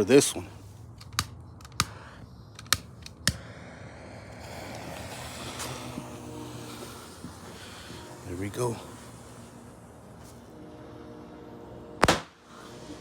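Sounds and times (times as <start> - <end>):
torch igniter clicking: 0.9 - 8.1, 12.0 - 12.4
torch hissing: 2.8 - 13.0.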